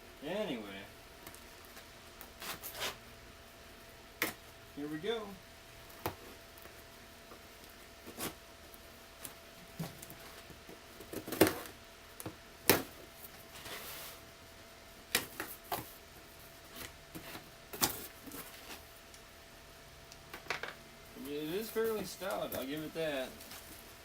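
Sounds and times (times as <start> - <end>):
packing rustle: 21.5 - 24.0.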